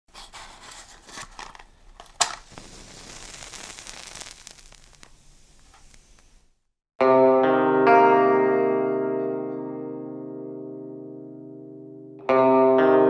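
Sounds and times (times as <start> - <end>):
crackling with clicks: 1.2 - 6.8
sharp crack: 1.3 - 6.8
high hiss: 2.2 - 6.8.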